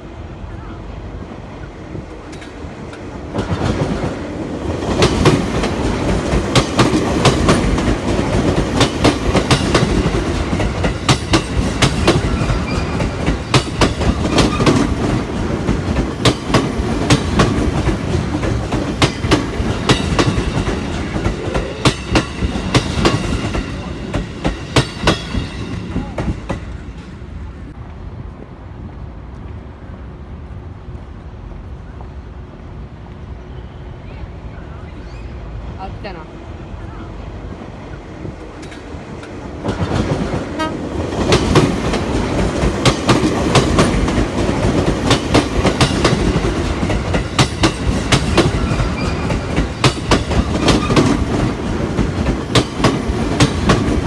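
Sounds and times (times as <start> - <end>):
train wheels clacking: 2.0 - 27.8, 38.3 - 54.0.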